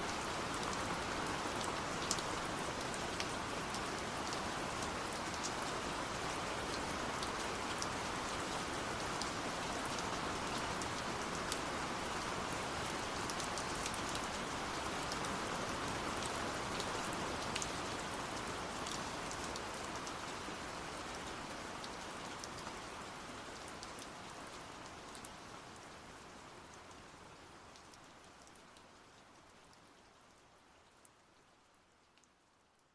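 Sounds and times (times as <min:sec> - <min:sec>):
steady rain falling: 0:00.0 - 0:32.9.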